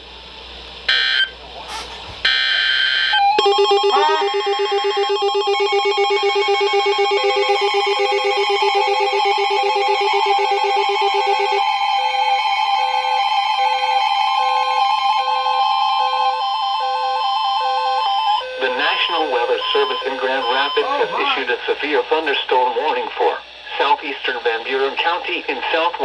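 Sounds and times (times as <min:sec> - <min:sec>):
steady alert tones: 0:03.4 - 0:05.2
short beeps: 0:19.0 - 0:21.4.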